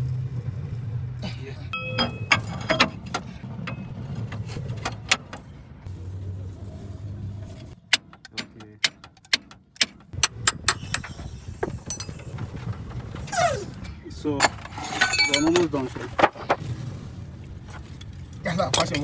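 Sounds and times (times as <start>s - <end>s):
tools clinking on steel parts: 1.8s - 3.9s, 7.9s - 12.6s, 14.4s - 16.3s.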